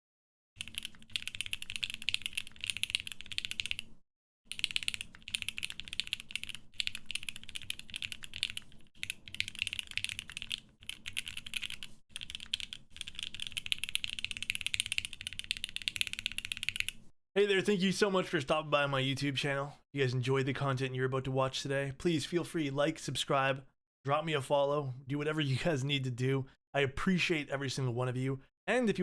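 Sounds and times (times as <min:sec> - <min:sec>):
fast typing on mechanical keyboard: 0:00.6 - 0:17.0.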